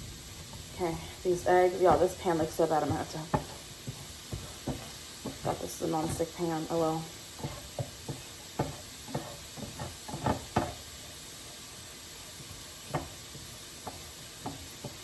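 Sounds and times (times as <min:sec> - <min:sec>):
eggs sizzling: 0:00.0 - 0:15.0
utensil scraping a frying pan: 0:01.8 - 0:15.0.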